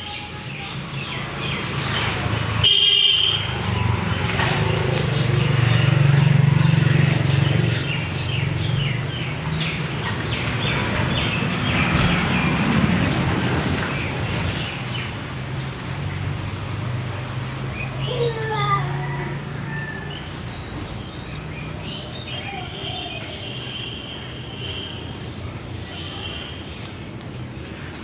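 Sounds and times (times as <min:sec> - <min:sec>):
road traffic rumble: 0:00.0 - 0:28.0
car horn toot: 0:02.6 - 0:03.5.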